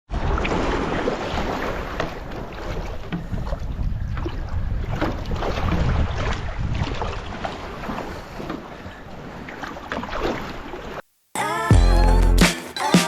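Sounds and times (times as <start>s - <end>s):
wind rumbling on microphone: 2.2s - 8.0s.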